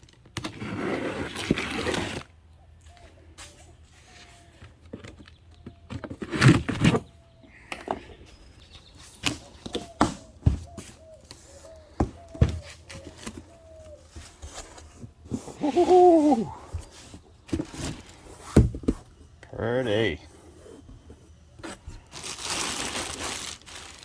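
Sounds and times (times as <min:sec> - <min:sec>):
cardboard box being opened: 0:12.4 - 0:19.1
packaging rustling: 0:17.1 - 0:18.9, 0:21.6 - 0:24.0.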